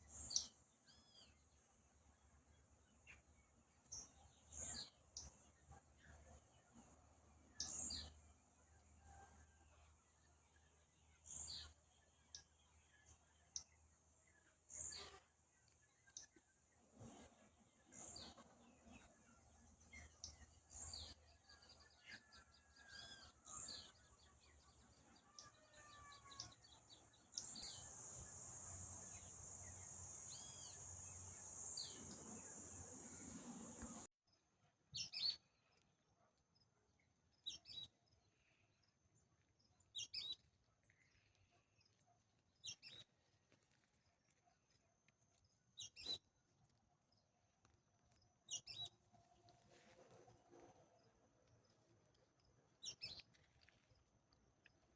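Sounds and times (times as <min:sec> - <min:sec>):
birds chirping: 0:26.2 - 0:34.1.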